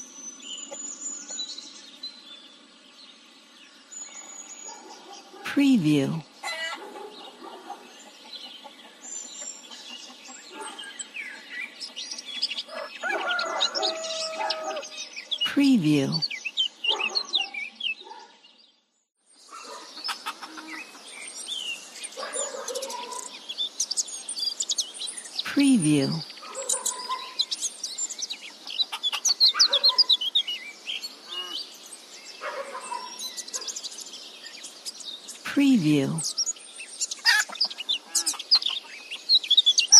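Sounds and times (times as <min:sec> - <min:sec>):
songbirds chirping: 0:00.0 - 0:39.9
hen clucking: 0:20.1 - 0:20.7.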